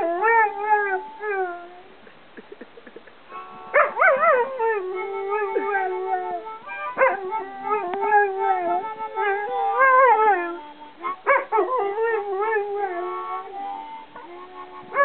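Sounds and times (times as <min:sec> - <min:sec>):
blues harmonica chords: 0:03.3 - 0:15.0
dog howling: 0:03.8 - 0:10.6, 0:11.2 - 0:13.5.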